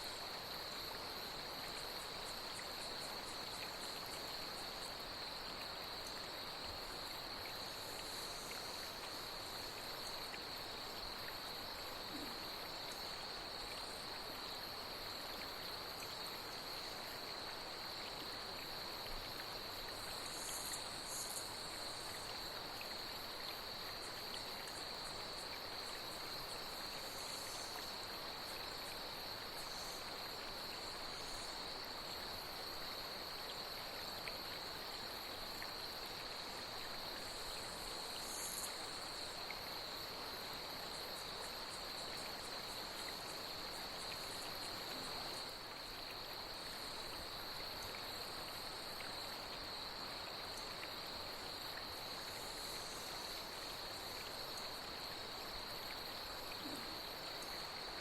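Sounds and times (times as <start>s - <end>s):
night insects chorus: 0.0s - 58.0s.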